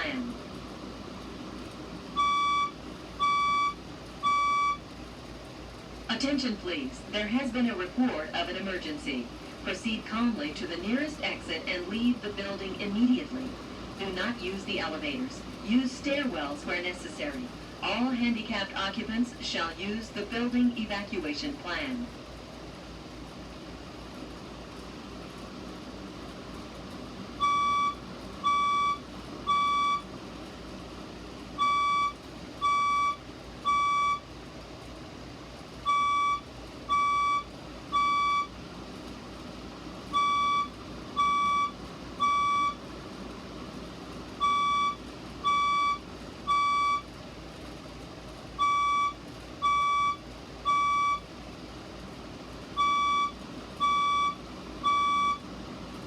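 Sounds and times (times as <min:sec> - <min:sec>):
fire alarm beeps: 0:02.2 - 0:04.8, 0:27.4 - 0:30.1, 0:31.6 - 0:34.3, 0:35.8 - 0:38.6, 0:40.1 - 0:42.8, 0:44.4 - 0:47.1, 0:48.6 - 0:51.3, 0:52.8 - 0:55.5.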